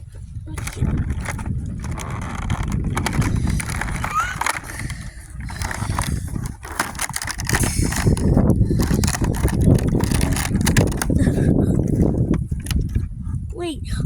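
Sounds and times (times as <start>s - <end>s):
handling rumble: 0.0s - 14.0s
quick crinkles and clicks: 0.4s - 13.1s
packaging crackling and tearing: 0.6s - 11.3s.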